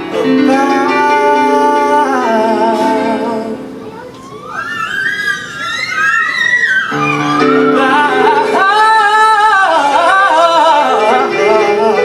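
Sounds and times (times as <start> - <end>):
high voice singing with vibrato: 0.0 - 5.0, 6.9 - 12.0
sustained chords: 7.0 - 12.0.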